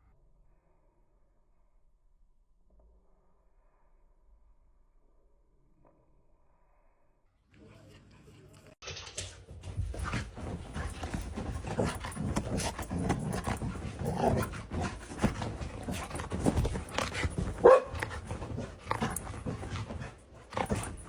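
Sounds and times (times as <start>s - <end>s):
dog barking: 17.3s - 18.2s.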